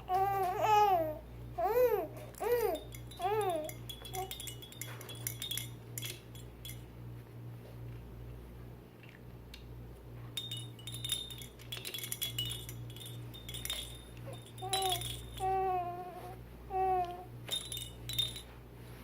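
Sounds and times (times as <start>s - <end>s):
clinks and rattles: 2.2s - 6.9s, 10.4s - 15.8s, 17.4s - 18.6s
chime-like ring: 2.5s - 6.8s, 10.4s - 15.6s, 17.5s - 18.6s
small child babbling: 14.6s - 17.3s.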